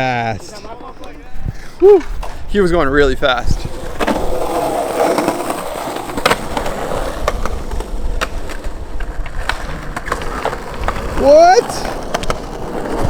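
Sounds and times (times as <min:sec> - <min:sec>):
skateboard wheels rolling: 0:00.1 - 0:13.0
skateboard clacks: 0:03.6 - 0:13.0.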